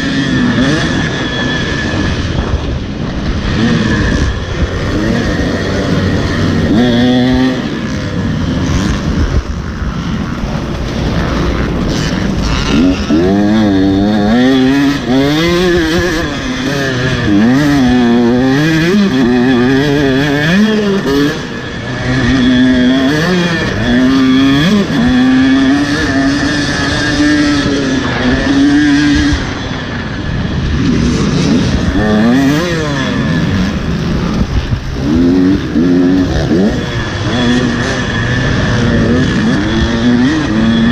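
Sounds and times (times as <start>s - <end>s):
motocross bike engine revving: 0.0s - 40.9s.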